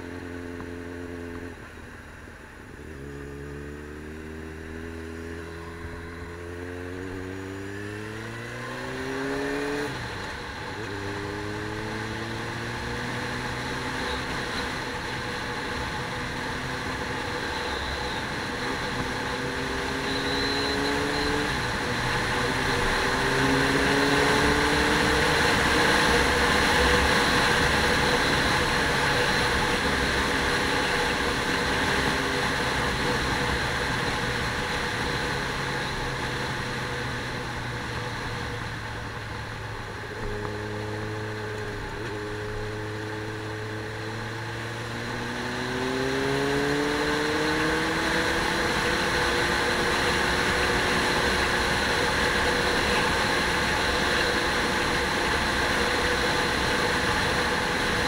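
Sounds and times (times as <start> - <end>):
vehicle engine accelerating: 2.8 - 58.0.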